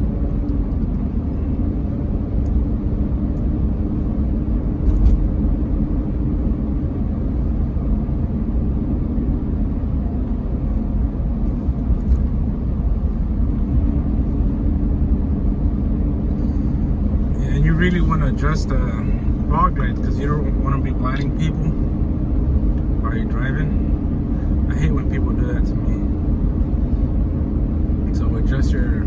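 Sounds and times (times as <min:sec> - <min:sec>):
car road rumble: 0:00.0 - 0:29.0.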